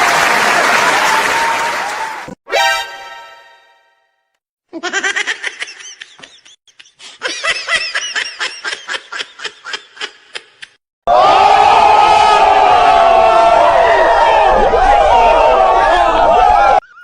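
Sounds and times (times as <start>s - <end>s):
laughing sound effect: 16.8s - 17.0s.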